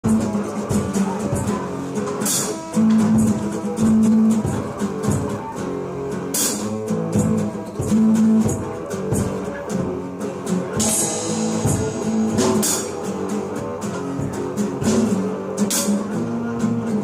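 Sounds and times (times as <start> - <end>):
band music: 0.0 - 17.0
cymbal crash: 10.8 - 13.5.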